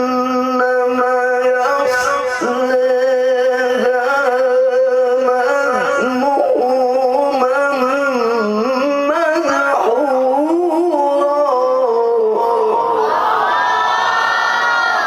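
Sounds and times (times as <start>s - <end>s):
man reciting a long melismatic note: 0.0s - 13.1s.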